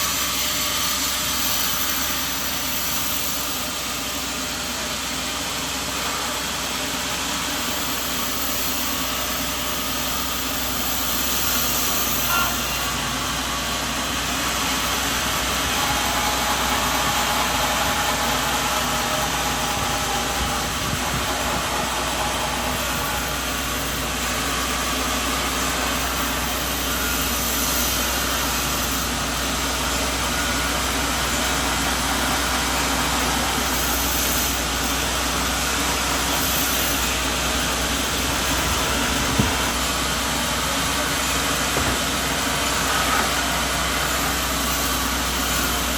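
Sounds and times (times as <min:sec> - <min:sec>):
continuous mechanical noise: 0:00.0 - 0:45.9
engine running steadily: 0:00.0 - 0:45.9
short knock: 0:41.7 - 0:42.2.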